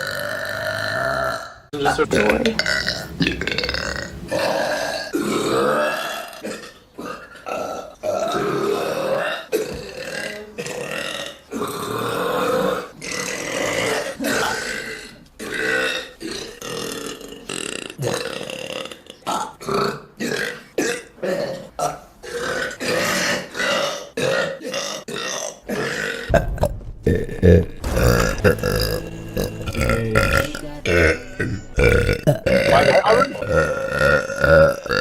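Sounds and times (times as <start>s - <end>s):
woman burping: 29.6s - 35.0s.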